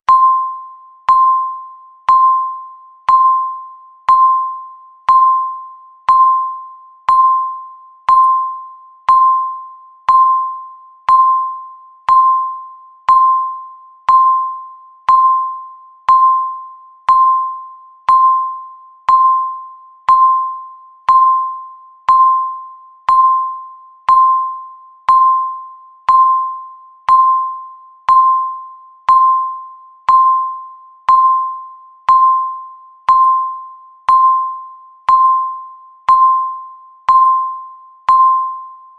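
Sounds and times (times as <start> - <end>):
timer beeping: 0.0 - 38.9.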